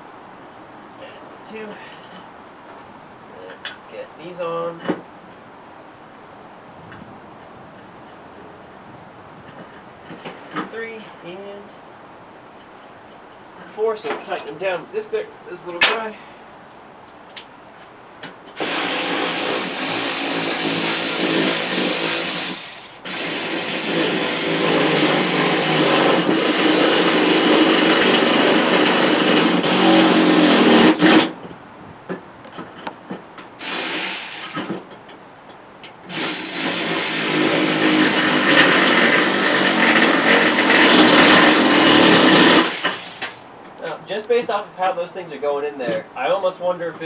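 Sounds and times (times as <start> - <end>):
cordless power driver running: 18.6 - 31.3, 33.6 - 34.7, 36.1 - 43.4.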